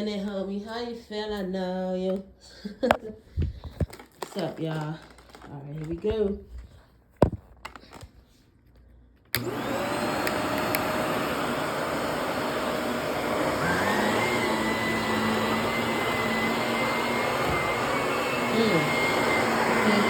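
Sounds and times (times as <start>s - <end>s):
vacuum cleaner running: 9.4s - 20.0s.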